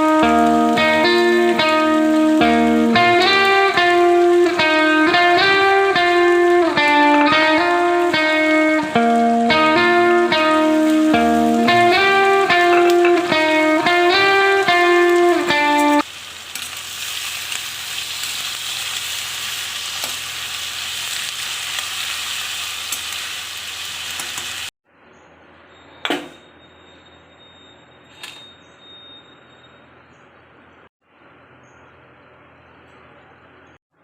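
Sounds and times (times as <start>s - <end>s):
food sizzling in hot oil: 0.0s - 24.7s.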